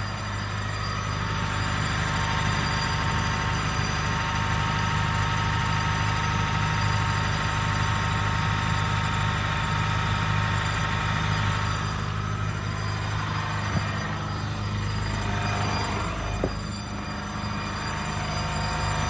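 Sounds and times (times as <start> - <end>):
car engine hum: 0.0 - 19.0
high-pitched engine squeal: 0.0 - 19.0.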